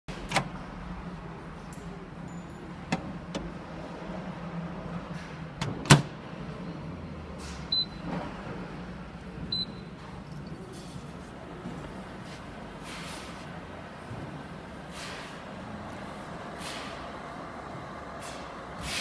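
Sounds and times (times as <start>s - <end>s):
microwave door clicks and clack: 5.6s - 6.2s.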